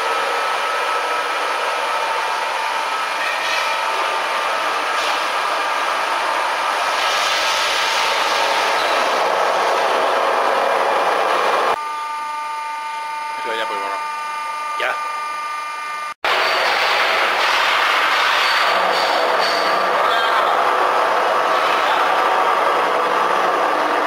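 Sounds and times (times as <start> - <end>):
faint steady whine: 11.7 - 16.2.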